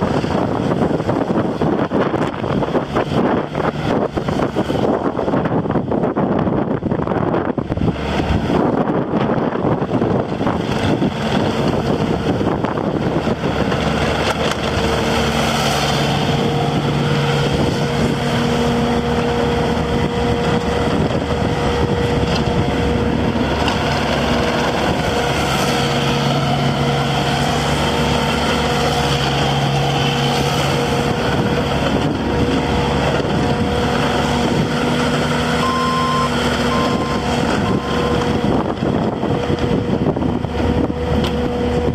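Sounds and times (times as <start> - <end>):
loader diesel engine running: 0.0 - 41.9
wind noise on microphone: 0.0 - 41.9
humming tones shifting in pitch: 32.2 - 38.7.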